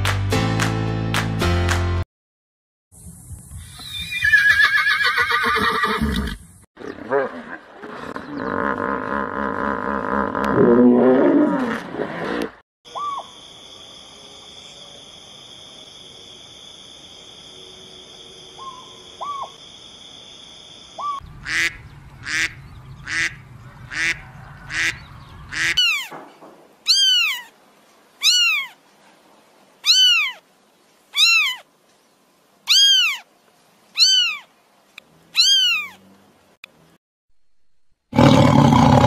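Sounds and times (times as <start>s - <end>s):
rising and falling animal calls: 3.6s - 13.3s, 21.0s - 26.2s, 26.8s - 27.6s, 28.2s - 28.8s, 29.8s - 30.4s, 31.1s - 31.7s, 32.7s - 33.3s, 34.0s - 34.5s, 35.2s - 36.1s
short animal calls: 25.5s - 26.1s, 26.8s - 27.6s, 28.2s - 28.8s, 29.8s - 30.4s, 31.1s - 31.7s, 32.7s - 33.3s, 34.0s - 34.5s, 35.3s - 36.1s.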